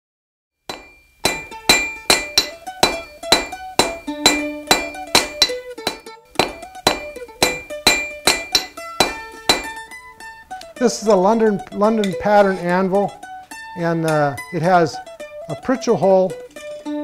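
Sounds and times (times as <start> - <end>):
hammer striking an anvil: 0.7 - 10.0
plucked-string tune: 0.7 - 17.0.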